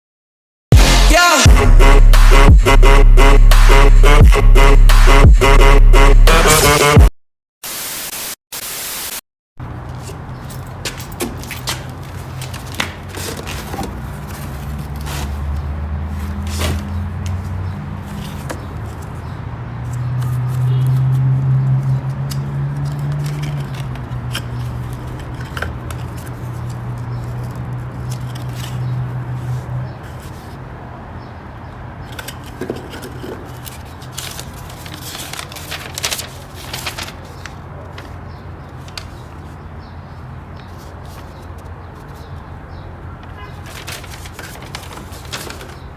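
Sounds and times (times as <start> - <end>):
scraping and clicking of packaging: 9.6 - 30.6, 32.0 - 39.6, 43.2 - 45.9
low droning hum: 36.8 - 37.1.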